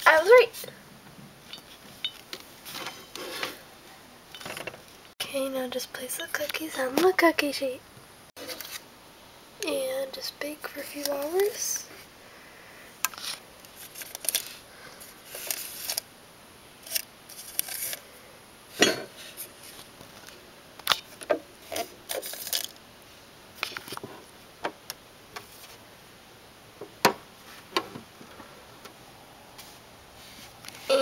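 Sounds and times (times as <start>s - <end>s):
kitchen items clattering: 4.4s - 4.8s, 18.8s - 19.2s.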